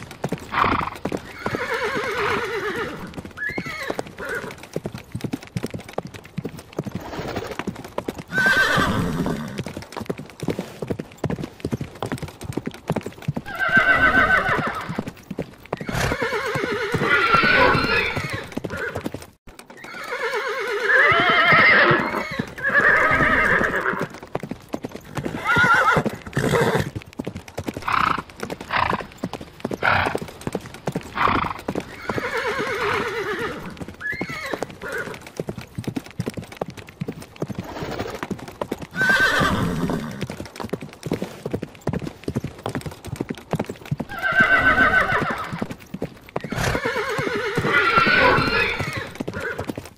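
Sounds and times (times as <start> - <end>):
hooves clip-clopping: 0.0 - 49.9
horses whinnying: 0.2 - 4.8, 6.8 - 9.8, 13.3 - 27.0, 27.7 - 35.5, 37.4 - 40.5, 44.0 - 49.9.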